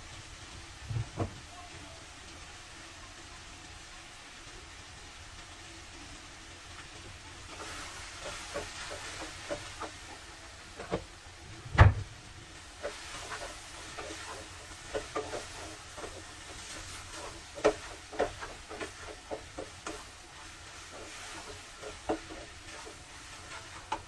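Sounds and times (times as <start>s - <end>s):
faint hiss: 0.0s - 24.0s
heavy thump: 0.8s - 1.4s, 11.5s - 12.3s
utensils and cookware clicking: 12.8s - 24.0s.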